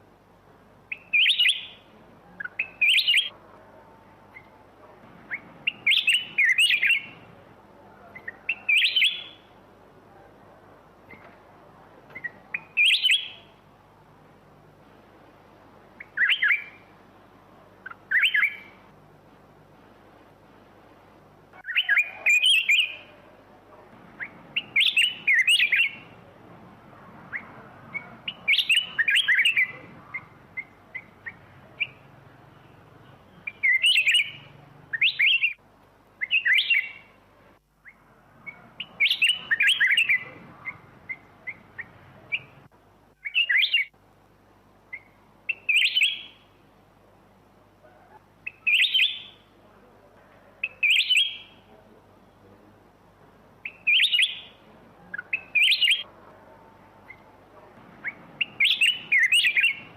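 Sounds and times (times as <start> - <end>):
bulbul singing chirping notes: 0.9 - 3.4, 5.3 - 7.3, 8.2 - 9.5, 24.2 - 26.2, 27.3 - 35.6, 37.8 - 44.0, 44.9 - 46.5, 53.6 - 56.1, 58.0 - 59.9.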